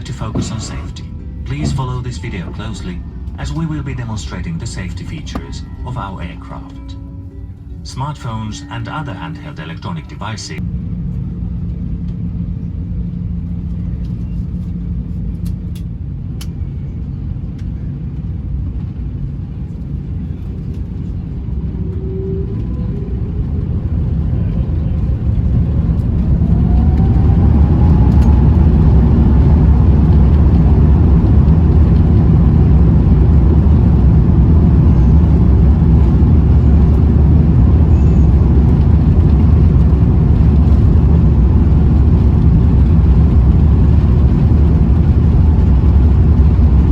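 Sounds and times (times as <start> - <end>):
jet engines rumbling: 0.0 - 46.9
engine whine spooling up: 20.4 - 46.9.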